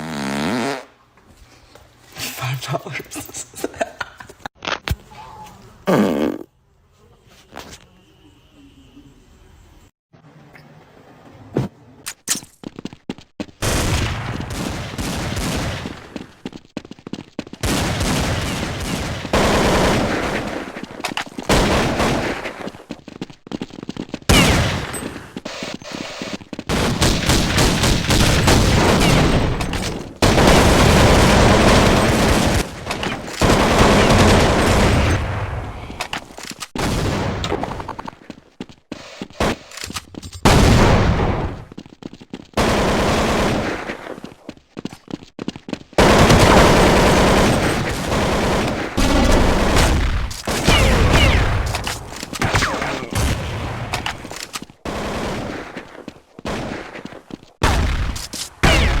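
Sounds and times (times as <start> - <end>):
short sharp fart pops: 0.0 - 0.9, 5.9 - 6.5.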